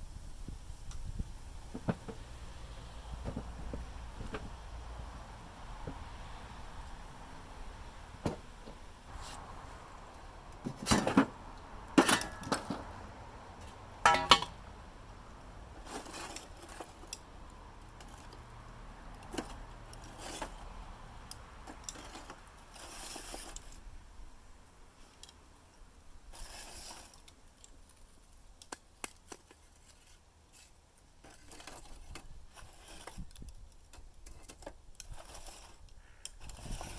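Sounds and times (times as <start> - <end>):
charcoal pieces clinking together: 14.1 - 14.6.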